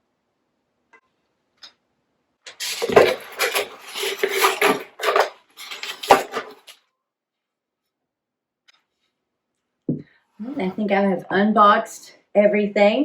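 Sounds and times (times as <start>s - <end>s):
plates and dishes clinking: 2.5s - 6.7s.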